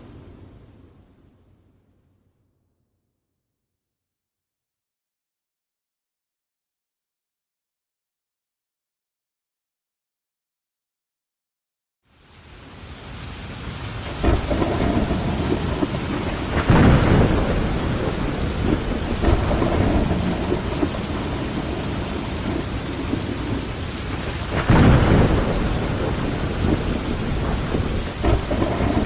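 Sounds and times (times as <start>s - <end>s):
thunder rumbles: 0.0s - 1.6s, 12.6s - 29.0s
rain on window glass: 0.0s - 1.7s, 12.1s - 29.0s.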